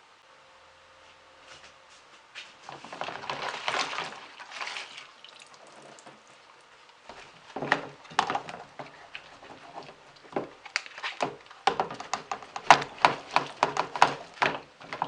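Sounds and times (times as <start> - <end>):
water splashing and sloshing: 2.5 - 15.0
scrubbing: 2.6 - 6.3, 7.1 - 15.0
knocks: 11.2 - 15.0.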